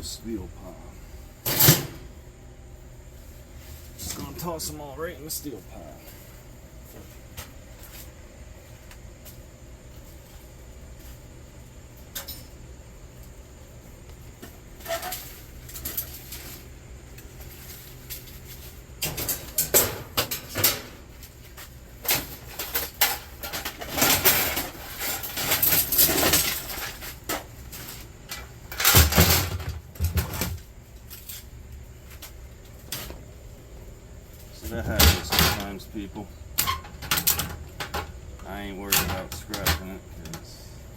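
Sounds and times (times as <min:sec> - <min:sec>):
scrap metal knocks and clatter: 0:17.4 - 0:30.6, 0:36.6 - 0:38.2.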